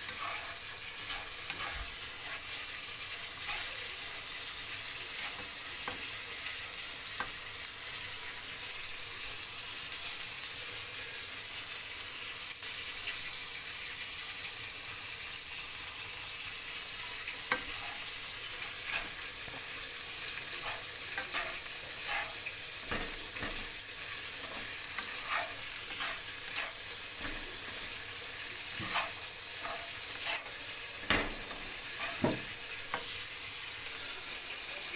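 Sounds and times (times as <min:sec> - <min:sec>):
spatula scraping and knocking pan: 0:00.0 - 0:07.5, 0:17.4 - 0:34.1
rice sizzling in a frying pan: 0:00.0 - 0:34.9.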